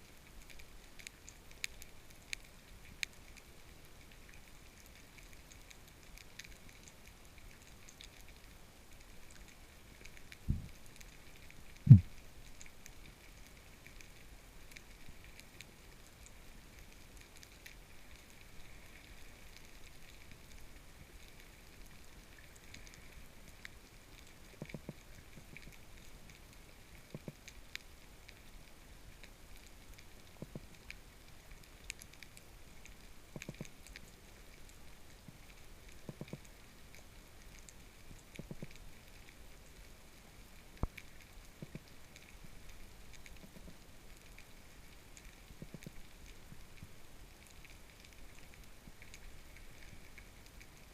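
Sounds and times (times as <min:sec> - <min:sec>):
fish drumming underwater: 0:00.0 - 0:50.9
low thump: 0:11.9 - 0:12.1
underwater crackling hiss: 0:17.8 - 0:27.6.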